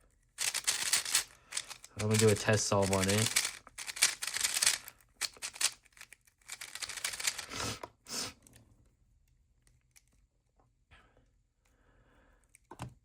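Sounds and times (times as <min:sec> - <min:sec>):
puzzle cube plastic clicks: 0:00.3 - 0:07.5.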